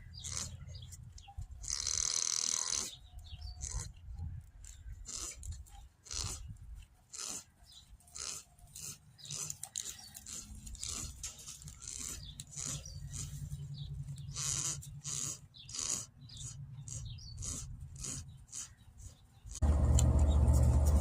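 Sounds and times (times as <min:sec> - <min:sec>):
goats crunching food: 0:00.0 - 0:16.0, 0:16.9 - 0:21.0
low steady hum: 0:19.6 - 0:21.0.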